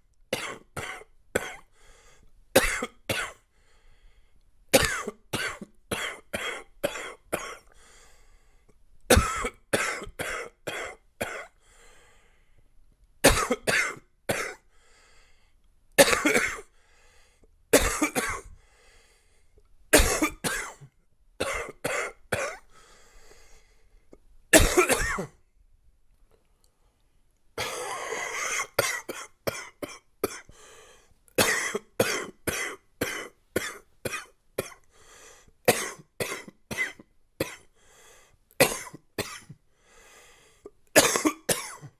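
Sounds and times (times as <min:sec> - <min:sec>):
man coughing chestily: 0:00.4 - 0:01.6, 0:02.6 - 0:03.4, 0:04.8 - 0:07.6, 0:09.1 - 0:11.5, 0:13.2 - 0:14.6, 0:16.0 - 0:16.7, 0:17.8 - 0:18.5, 0:20.0 - 0:20.8, 0:21.4 - 0:22.7, 0:24.5 - 0:25.4, 0:27.6 - 0:30.5, 0:31.4 - 0:34.8, 0:35.7 - 0:37.7, 0:38.6 - 0:39.6, 0:41.0 - 0:41.9.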